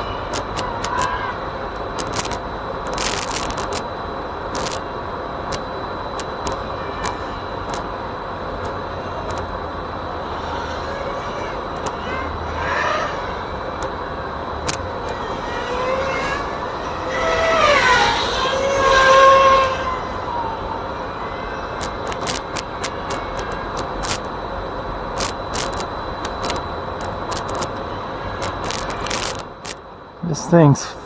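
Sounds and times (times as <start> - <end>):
drone motors whining: 0.0 - 30.9
steady rushing background: 0.0 - 31.0
sharp clicks: 1.9 - 3.8, 14.6 - 14.9, 21.8 - 24.3, 25.2 - 27.8, 28.4 - 29.8.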